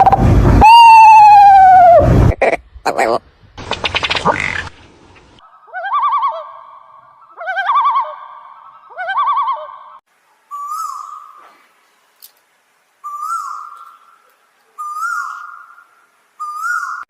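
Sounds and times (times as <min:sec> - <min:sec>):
bird whistled call: 0:10.5 - 0:11.5, 0:13.0 - 0:14.2, 0:14.8 - 0:17.0.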